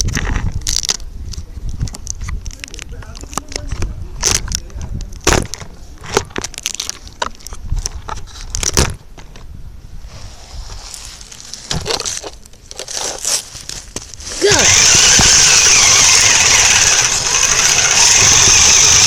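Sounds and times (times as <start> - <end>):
knocks rattles and crunching: 11.7 - 19.0
toy truck driving: 14.4 - 19.0.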